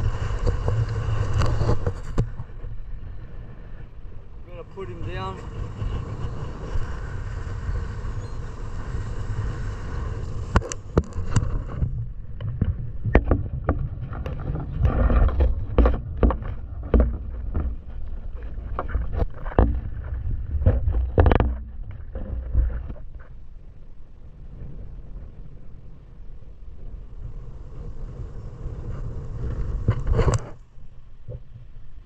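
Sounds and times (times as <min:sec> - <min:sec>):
wind rumble on microphone: 0:00.0 - 0:32.0
sharp clicks and knocks: 0:10.5 - 0:23.3.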